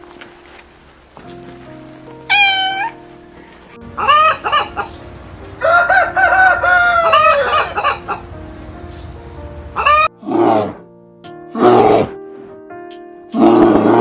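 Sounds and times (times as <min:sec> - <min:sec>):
soft background music: 0:00.0 - 0:14.0
rooster crowing: 0:03.8 - 0:10.1.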